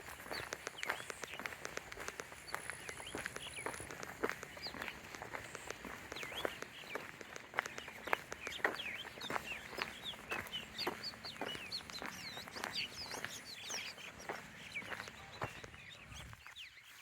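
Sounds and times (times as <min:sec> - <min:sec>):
birds chirping and whistling: 0:00.0 - 0:17.0
quick sharp clicks: 0:00.2 - 0:08.7.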